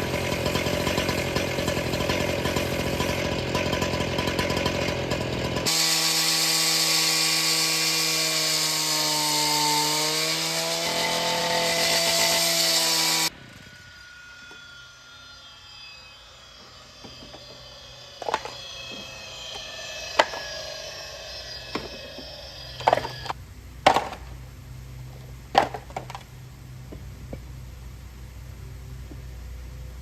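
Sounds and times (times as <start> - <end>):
saw blade cutting concrete: 0.0 - 15.5, 16.2 - 24.3
saw engine running: 0.0 - 24.3.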